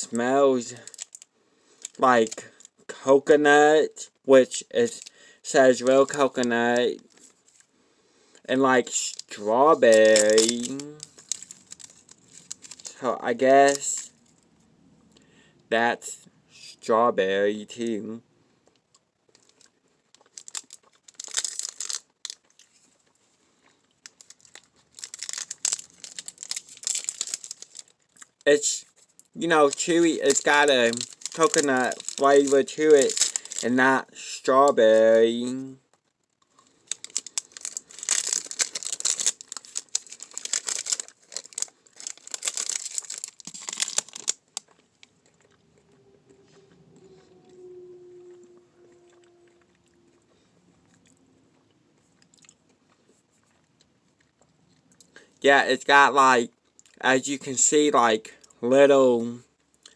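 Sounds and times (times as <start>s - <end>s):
plastic wrapper crinkling: 0.7s - 2.8s, 8.8s - 14.4s, 19.3s - 23.2s, 23.8s - 34.0s, 36.0s - 45.4s.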